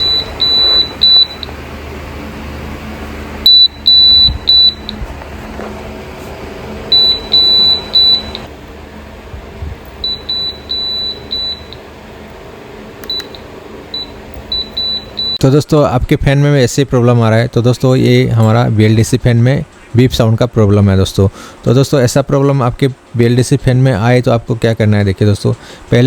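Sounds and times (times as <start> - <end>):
high electronic fault beeps: 0.0 - 1.5, 3.5 - 5.0, 6.9 - 8.4, 10.0 - 11.8, 14.0 - 15.5
steady low hum: 0.0 - 26.0.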